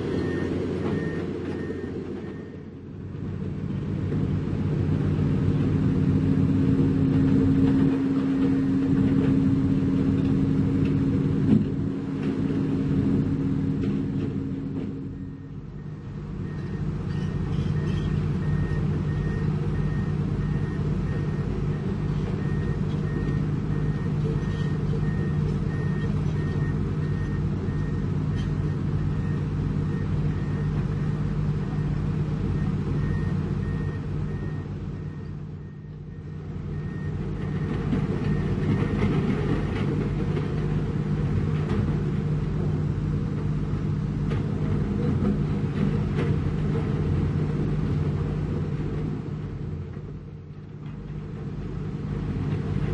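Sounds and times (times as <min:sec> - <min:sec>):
diesel construction machinery running: 0:00.0 - 0:52.9
reversing alarm beeping: 0:00.2 - 0:02.7, 0:14.4 - 0:39.0.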